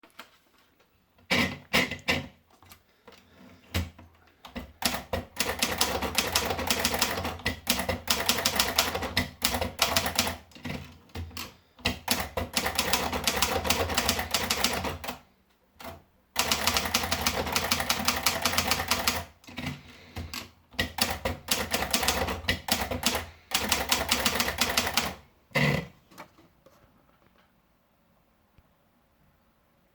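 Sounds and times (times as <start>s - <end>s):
manual typewriter typing: 3.8s - 25.2s.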